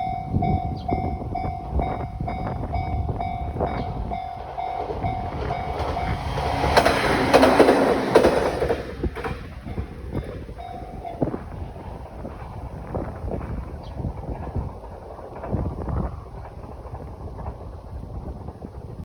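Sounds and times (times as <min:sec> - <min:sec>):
railroad crossing bell ringing: 0:00.0 - 0:11.8
electric train passing: 0:00.0 - 0:19.0
train wheels clacking over rail joints: 0:00.1 - 0:18.7.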